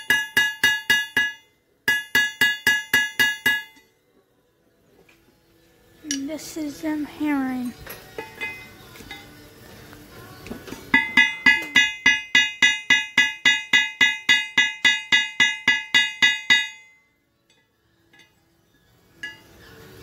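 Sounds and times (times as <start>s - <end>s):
hammer ringing on steel anvil: 0.0s - 3.9s, 10.9s - 18.4s.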